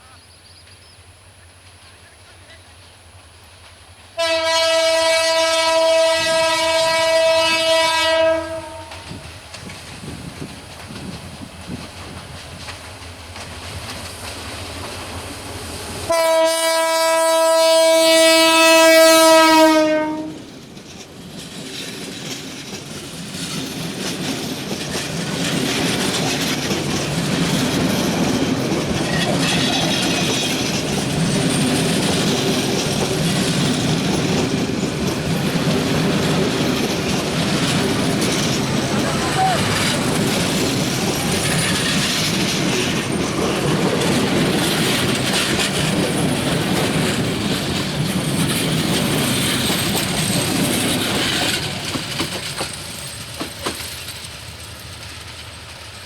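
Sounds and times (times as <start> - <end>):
low rumble of train: 0.0 - 56.0
train horn blast: 4.2 - 9.2, 16.1 - 20.4
wheels clattering over rail joints: 8.8 - 15.2, 20.4 - 56.0.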